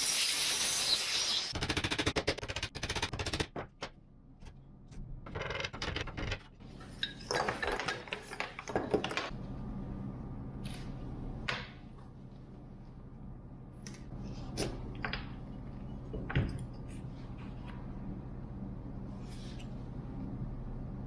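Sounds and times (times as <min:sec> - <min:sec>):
steady low hum: 0:09.3 - 0:21.0.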